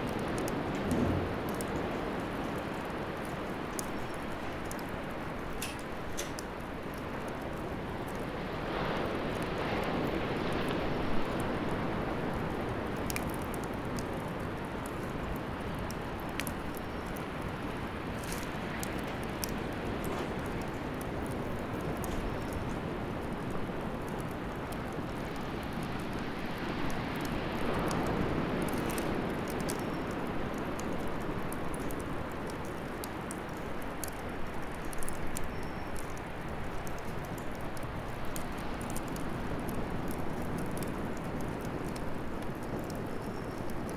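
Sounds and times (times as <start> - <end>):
fire crackling and popping: 0.0 - 43.9
flames rushing: 0.1 - 3.8.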